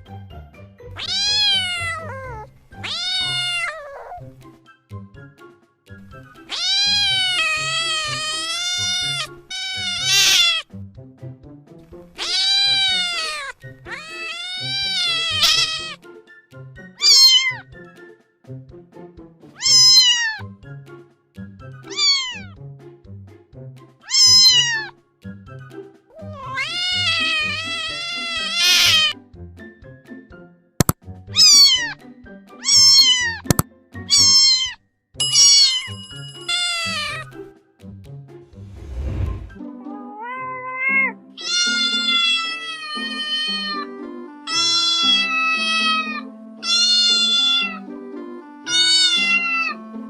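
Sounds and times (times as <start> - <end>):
kitten meowing: 1.0 - 4.3, 6.4 - 10.6, 12.2 - 16.0, 17.0 - 17.6, 19.6 - 20.4, 21.9 - 22.5, 24.0 - 24.9, 26.2 - 29.2, 31.3 - 32.0, 32.6 - 34.8, 35.4 - 37.3, 39.9 - 43.8, 44.5 - 47.8, 48.7 - 49.8
background music with steady beat: 4.2 - 9.6, 10.6 - 26.2, 28.5 - 34.4, 35.2 - 38.6.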